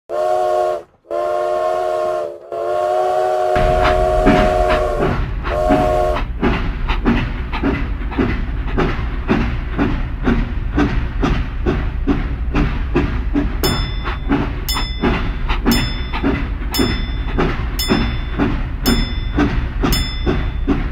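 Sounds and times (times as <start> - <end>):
toy train whistle: 0.1 - 6.2
rhythmic train chugging: 0.1 - 20.9
low rumble: 3.6 - 20.9.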